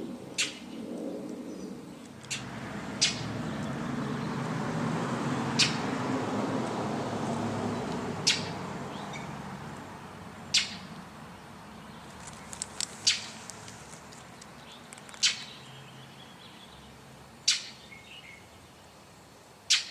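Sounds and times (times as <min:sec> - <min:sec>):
fledgling harsh begging calls: 0:02.3 - 0:04.3, 0:05.5 - 0:06.0, 0:08.2 - 0:09.3, 0:10.4 - 0:11.0.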